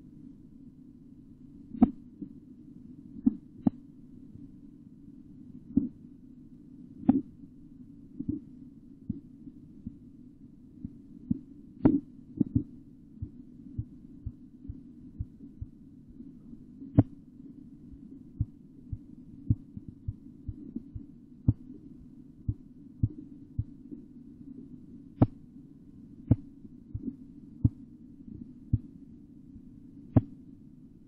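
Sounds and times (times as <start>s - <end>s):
steady low hum: 0.0s - 31.0s
heartbeat taps through stethoscope: 1.8s - 2.3s, 7.0s - 7.3s, 9.1s - 10.0s, 10.8s - 15.8s, 17.0s - 17.2s, 22.5s - 23.8s, 25.2s - 25.4s, 26.3s - 27.8s.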